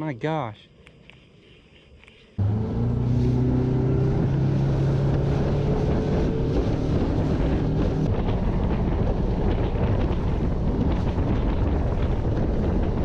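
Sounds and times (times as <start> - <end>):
outboard motor running: 2.4 - 13.0
wind buffeting microphone: 2.8 - 13.0.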